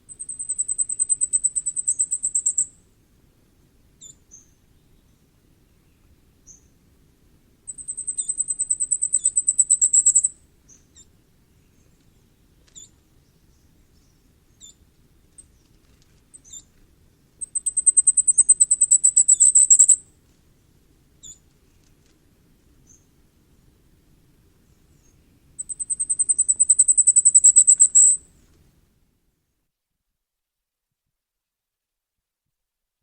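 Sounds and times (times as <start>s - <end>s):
faint high bird calls: 0.0s - 2.8s, 4.0s - 5.2s, 7.7s - 16.8s, 17.4s - 20.1s, 24.9s - 28.3s.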